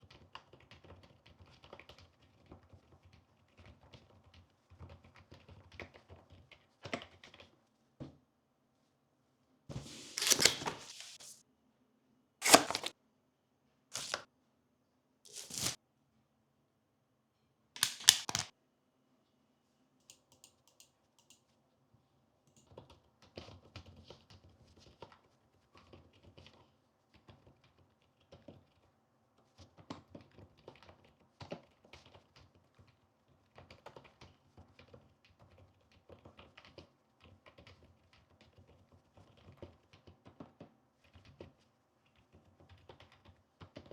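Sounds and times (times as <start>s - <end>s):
loud sharp handling sounds: 9.8s - 11.4s, 12.4s - 12.9s, 14.0s - 14.2s, 15.3s - 15.8s, 17.8s - 18.5s.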